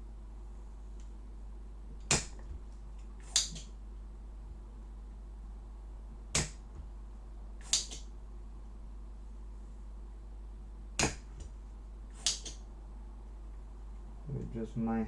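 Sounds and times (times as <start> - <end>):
steady low hum: 0.0 - 15.0
desoldering pump snapping: 2.0 - 3.7, 6.3 - 6.9, 11.0 - 11.6.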